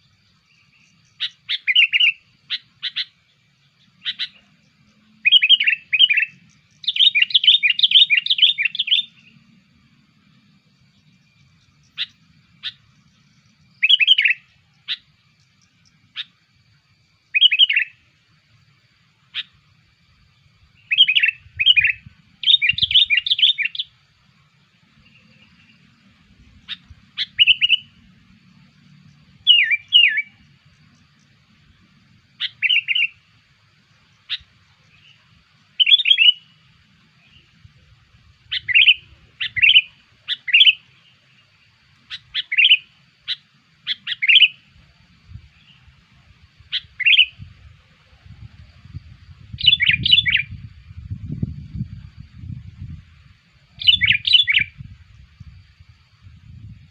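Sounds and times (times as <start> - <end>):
bird chirping: 0.0 - 18.1, 19.2 - 37.8, 38.4 - 53.0, 53.7 - 55.6.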